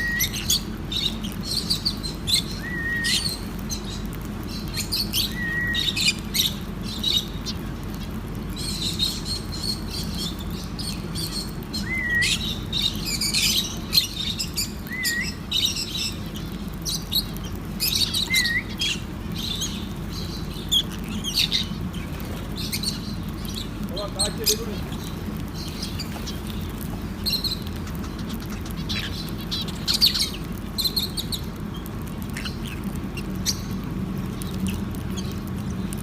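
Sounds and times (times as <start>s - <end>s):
lovebirds chirping: 0.0s - 36.0s.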